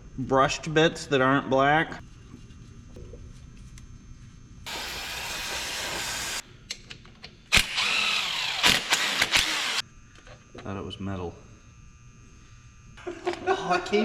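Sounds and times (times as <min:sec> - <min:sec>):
power tool running: 0:04.7 - 0:06.4, 0:07.5 - 0:09.8
steady hissing: 0:04.7 - 0:06.4.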